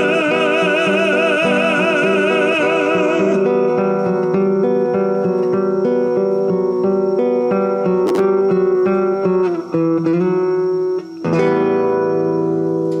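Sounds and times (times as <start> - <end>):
instrumental guitar music: 0.0 - 13.0.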